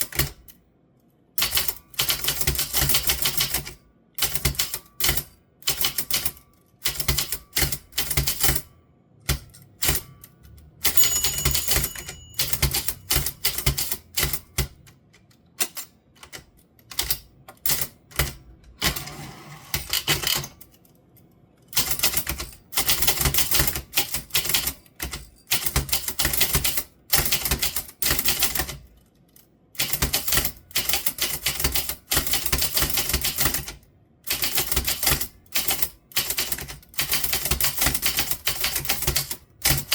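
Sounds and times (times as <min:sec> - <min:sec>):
typewriter key strikes: 0:10.8 - 0:14.8.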